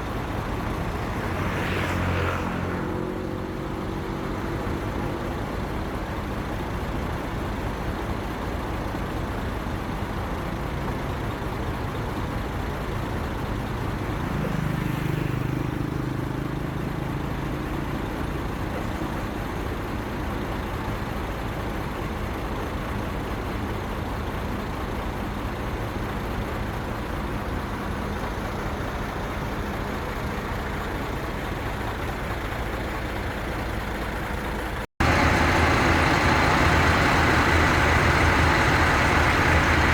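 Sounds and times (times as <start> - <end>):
heavy road traffic: 0.0 - 39.9
low engine sound: 0.0 - 39.9.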